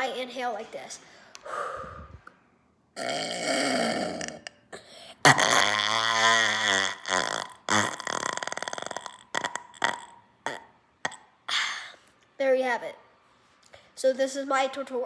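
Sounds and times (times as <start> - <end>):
person sucking air in: 1.4 - 2.3
long low-pitched burp: 3.0 - 4.6, 5.2 - 11.2
short crackly burps: 5.2 - 11.3.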